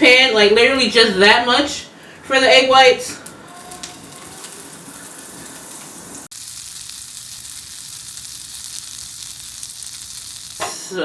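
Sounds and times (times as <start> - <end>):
butter sizzling in a skillet: 3.2 - 10.6.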